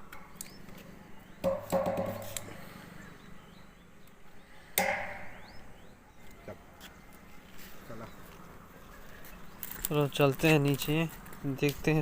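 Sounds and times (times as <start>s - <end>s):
sharp knocks: 1.4s - 2.4s, 4.8s - 5.4s.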